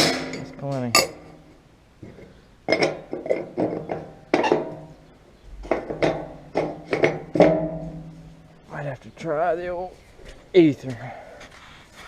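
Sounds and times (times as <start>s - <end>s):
metallic clanks and knocks: 0.0s - 8.5s.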